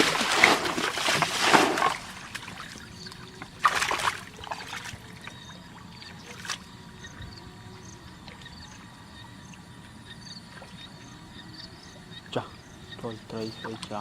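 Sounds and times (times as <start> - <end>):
water splash: 0.0 - 6.7
water sloshing and trickling: 0.0 - 14.0.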